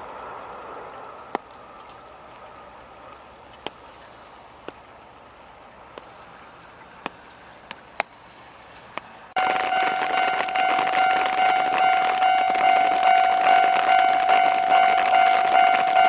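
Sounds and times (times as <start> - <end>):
level crossing alarm ringing: 9.4 - 16.0.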